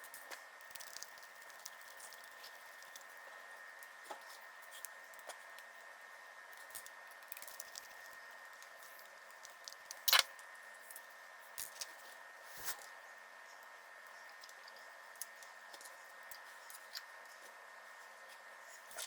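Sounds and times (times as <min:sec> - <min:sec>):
faint steady high hum: 0:00.0 - 0:19.0.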